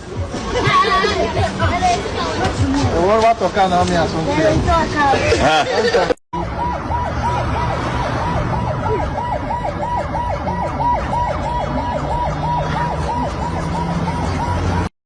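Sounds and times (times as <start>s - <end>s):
emergency siren yelping: 6.4s - 14.9s.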